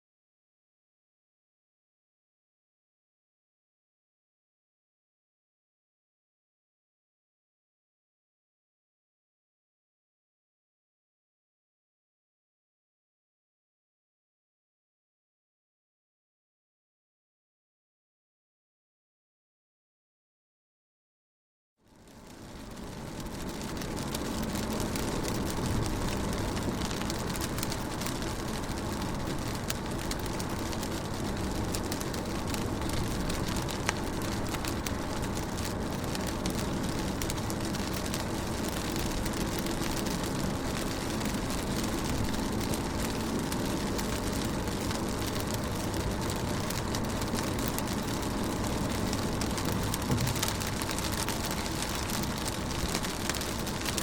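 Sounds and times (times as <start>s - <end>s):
rain falling on a car: 21.9s - 54.0s
raindrops ticking on window glass: 21.9s - 54.0s.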